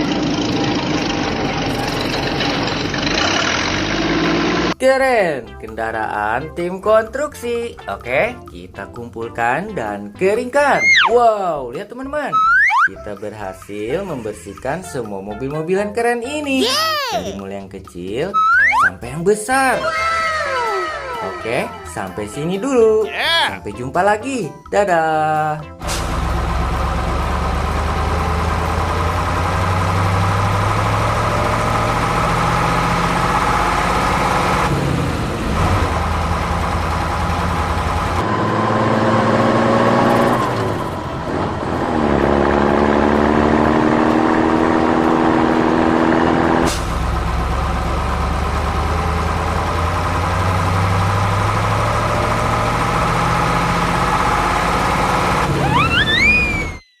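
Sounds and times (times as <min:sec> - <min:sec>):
truck engine revving: 0:00.0 - 0:04.8, 0:25.8 - 0:56.8
rising whistle-like tones: 0:12.3 - 0:12.9, 0:18.3 - 0:19.0, 0:55.6 - 0:57.0.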